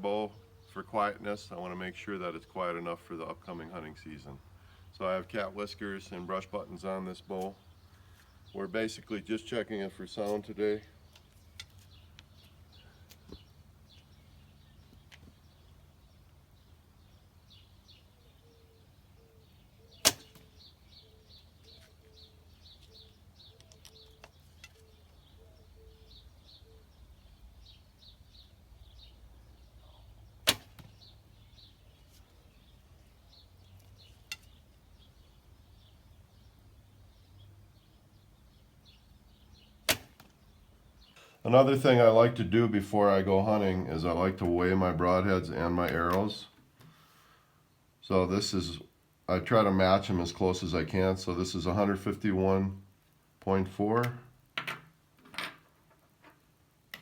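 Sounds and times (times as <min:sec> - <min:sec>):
bow string snap: 0:20.0 - 0:20.5, 0:30.4 - 0:30.9.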